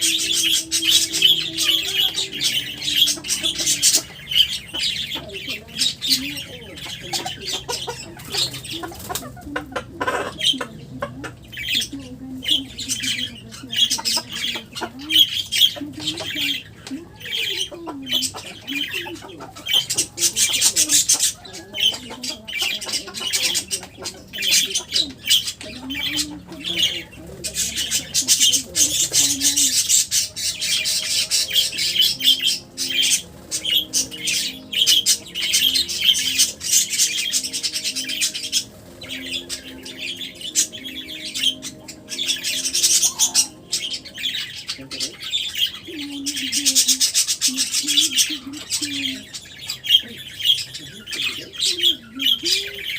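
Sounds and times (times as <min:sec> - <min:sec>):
low steady drone: 0:00.0 - 0:08.8, 0:25.1 - 0:47.1
birds chirping and squawking: 0:00.0 - 0:52.9.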